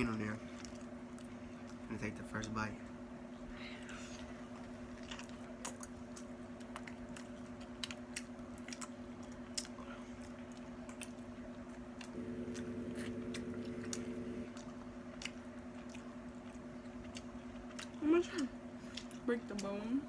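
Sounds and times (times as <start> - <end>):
person chewing meat: 4.2 - 19.6
steady low hum: 11.4 - 19.3.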